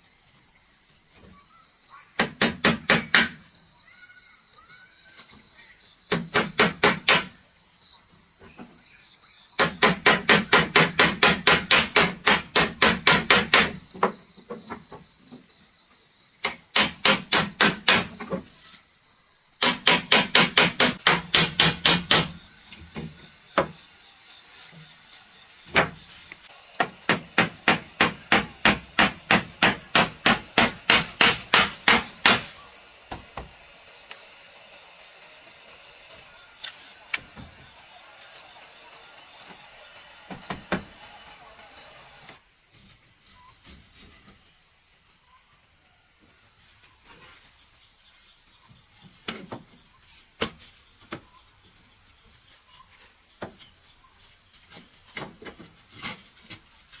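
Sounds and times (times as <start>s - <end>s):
hammer striking wood: 2.2s - 3.4s, 6.1s - 7.4s, 9.6s - 14.2s, 16.4s - 18.4s, 19.6s - 22.4s, 25.7s - 26.0s, 26.8s - 33.6s, 40.3s - 41.0s.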